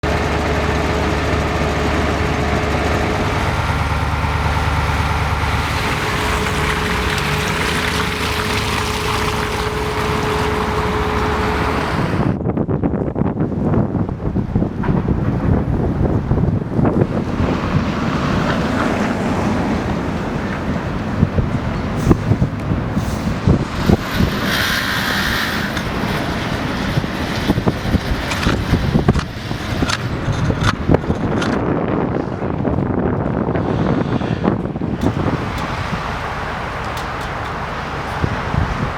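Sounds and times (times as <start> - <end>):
rushing noise: 0.0 - 12.4, 15.2 - 31.6
engine running with whine: 0.0 - 12.5, 13.5 - 38.9
car passing: 2.5 - 12.4, 16.8 - 31.6.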